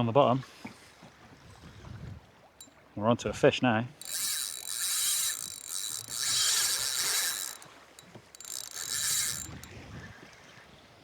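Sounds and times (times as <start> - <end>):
fishing reel drag ticking: 3.9 - 9.8.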